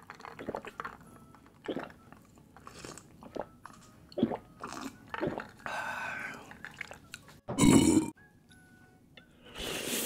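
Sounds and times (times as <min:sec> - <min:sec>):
person chewing noodles: 0:00.0 - 0:07.3
wet mouth sounds: 0:00.1 - 0:00.9, 0:01.6 - 0:02.0, 0:02.6 - 0:05.7.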